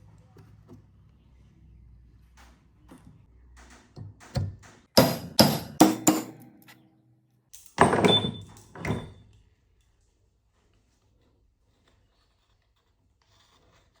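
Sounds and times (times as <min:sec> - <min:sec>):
hard sharp knocks on metal parts: 0:03.6 - 0:06.7, 0:07.6 - 0:09.1.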